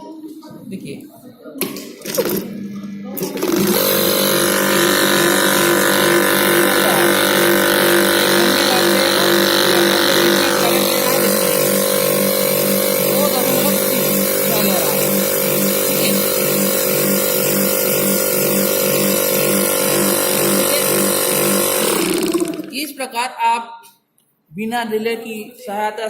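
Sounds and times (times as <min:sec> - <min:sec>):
compressor motor humming: 0:02.0 - 0:22.9.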